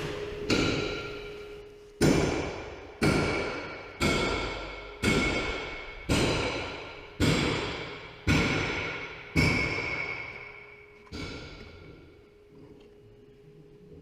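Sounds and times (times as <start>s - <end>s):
struck ringing note: 0.0s - 1.8s.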